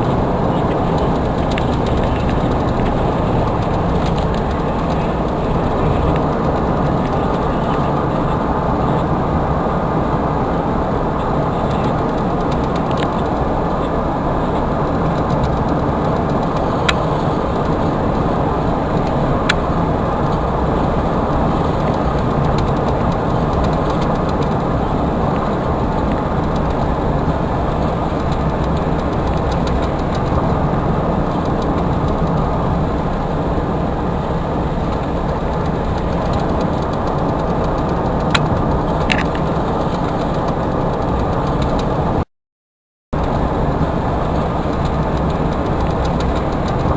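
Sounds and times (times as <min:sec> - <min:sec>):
faint clicks: 0:00.0 - 0:08.3, 0:11.5 - 0:19.7, 0:21.2 - 0:30.6, 0:34.8 - 0:42.0, 0:43.2 - 0:46.9
vehicle engine and road noise: 0:00.0 - 0:42.2, 0:43.2 - 0:46.9.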